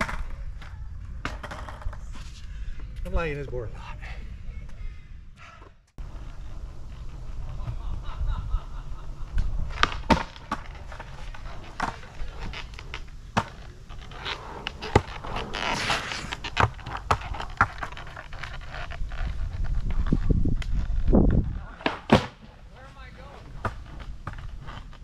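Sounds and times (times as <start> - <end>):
skateboard clacking on ground: 0.0 - 2.0, 9.3 - 22.6
skateboard rolling on pavement: 0.0 - 3.0, 6.0 - 25.0
skateboard hissing scrape: 14.0 - 16.8.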